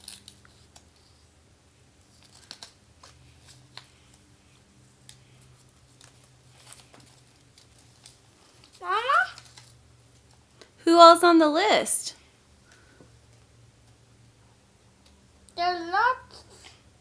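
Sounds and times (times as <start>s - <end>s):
paper rustling: 2.0s - 4.2s, 5.0s - 10.4s.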